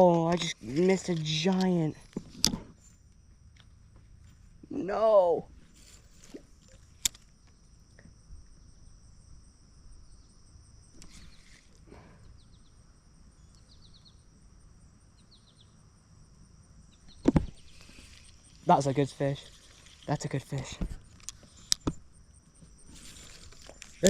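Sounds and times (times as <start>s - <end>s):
insects droning: 0.0s - 24.0s
chirp trills: 13.4s - 14.3s.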